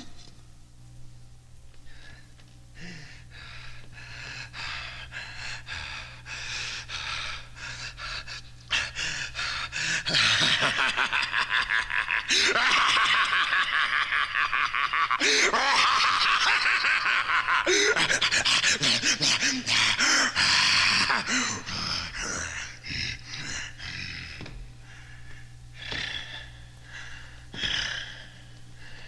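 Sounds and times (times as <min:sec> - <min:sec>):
heavy panting and gasping: 0:02.8 - 0:10.7, 0:17.6 - 0:29.0.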